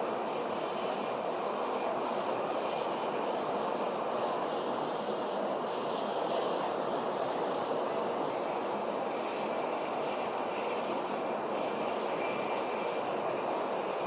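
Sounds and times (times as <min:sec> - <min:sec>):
train running at speed: 0:00.0 - 0:14.0.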